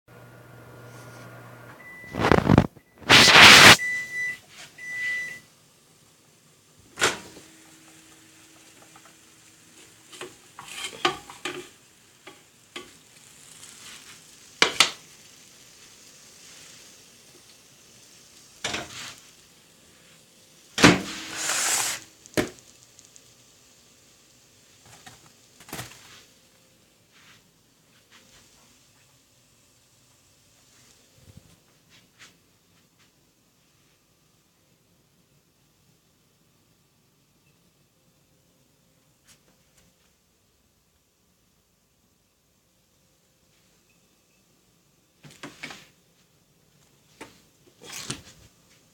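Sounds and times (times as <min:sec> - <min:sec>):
kitchen knocks and clatter: 0:10.2 - 0:12.9.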